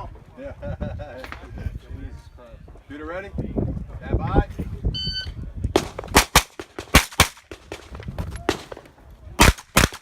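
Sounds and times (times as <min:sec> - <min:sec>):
carbine gunshots: 0:05.8 - 0:07.9, 0:09.4 - 0:10.0.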